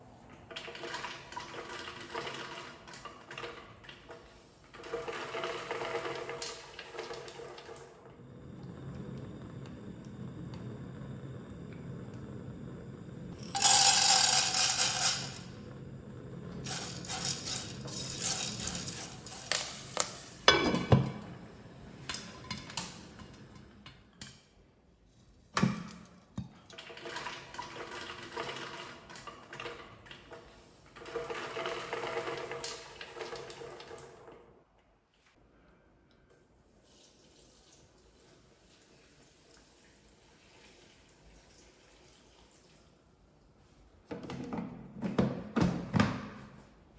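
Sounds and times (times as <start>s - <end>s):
rattling pour: 13.3s - 20.5s
cookware and utensils clinking: 13.4s - 15.5s, 16.6s - 21.3s.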